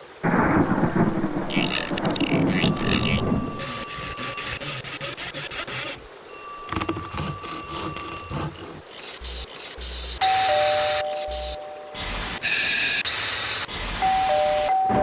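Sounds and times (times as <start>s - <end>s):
noisy hits with low thuds: 0.2s - 3.6s
steady ringing tones: 2.5s - 5.0s, 6.2s - 12.4s, 14.0s - 15.0s
two-note doorbell chime: 10.2s - 12.0s, 14.1s - 15.0s.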